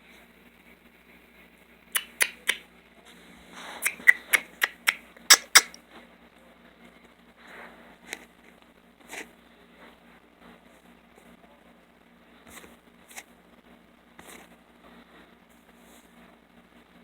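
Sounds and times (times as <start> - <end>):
sharp clicks and taps: 2.0 - 2.6, 3.8 - 5.8.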